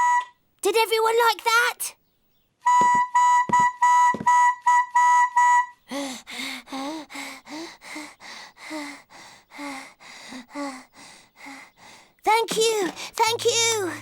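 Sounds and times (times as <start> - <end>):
cartoon character panting: 5.9 - 12.1.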